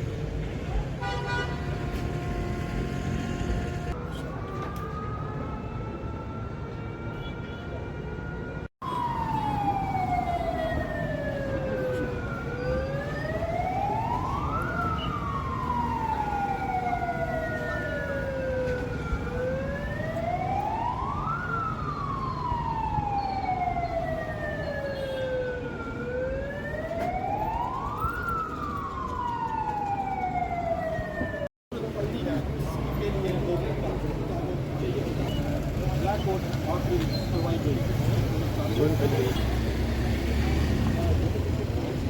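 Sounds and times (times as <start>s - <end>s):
air-raid siren wailing: 0.8s - 31.5s.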